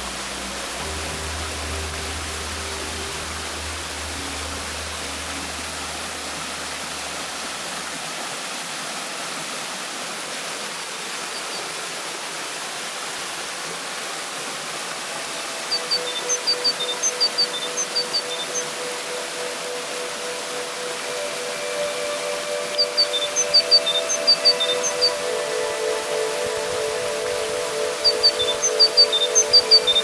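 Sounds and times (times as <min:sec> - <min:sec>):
low hum: 0:00.0 - 0:07.4
waterfall rushing: 0:00.0 - 0:30.0.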